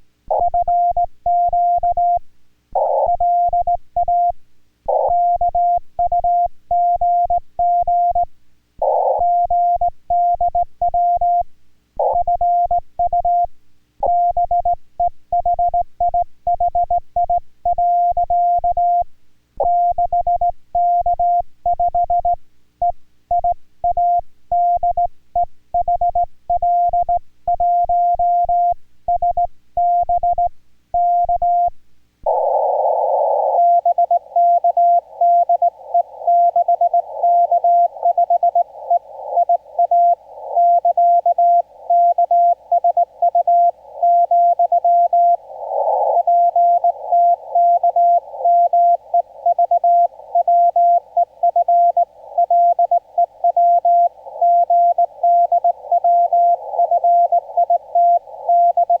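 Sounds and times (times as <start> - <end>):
morse code tone: 25.8 - 59.0
buzzy radio noise: 32.2 - 59.0.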